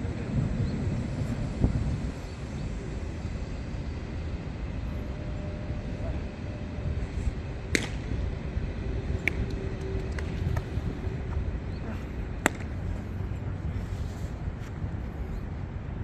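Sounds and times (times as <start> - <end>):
low outdoor rumble: 0.0 - 16.0
bat hitting baseball crack: 7.7 - 8.1, 12.4 - 12.8.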